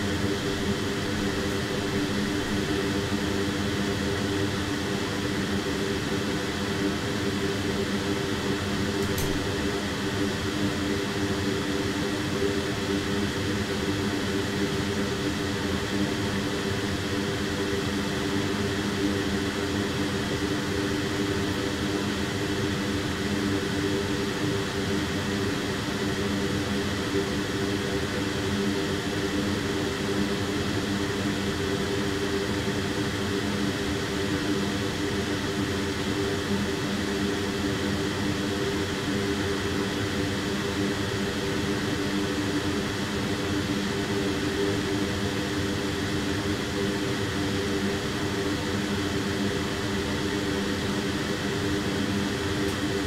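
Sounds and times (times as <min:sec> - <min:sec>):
fan whirring: 0:08.8 - 0:10.1.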